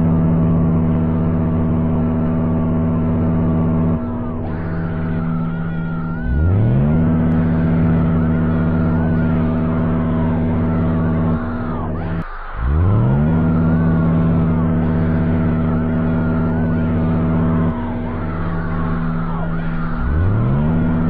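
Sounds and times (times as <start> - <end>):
alarm drone of stacked tones: 0.0 - 21.0.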